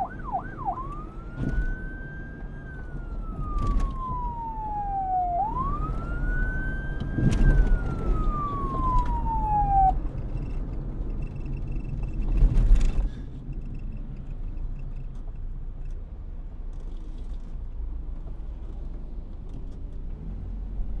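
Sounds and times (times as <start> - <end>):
police siren wail: 0.0 - 10.0
street traffic rumble: 0.0 - 21.0.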